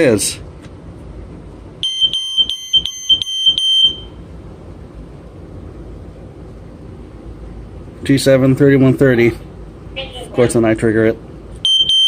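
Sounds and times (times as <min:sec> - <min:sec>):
smoke alarm pulsing shrill tone: 0:01.8 - 0:04.2, 0:11.6 - 0:12.0.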